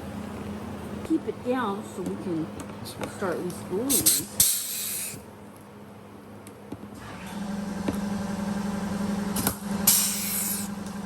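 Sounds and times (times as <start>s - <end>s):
machine motor hum: 7.0s - 11.0s.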